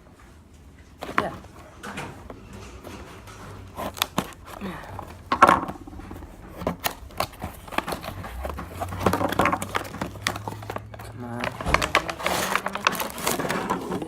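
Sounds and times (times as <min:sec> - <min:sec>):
plastic packaging clicking: 0:03.3 - 0:14.0.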